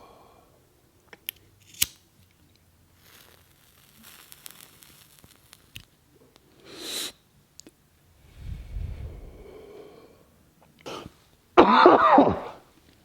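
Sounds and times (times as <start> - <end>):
lighter clicking: 1.3 - 2.0, 3.0 - 7.1
lighter strike hiss: 1.6 - 2.1, 2.9 - 7.2
breathy rush of smoke inhaled: 6.5 - 7.2, 8.2 - 10.3.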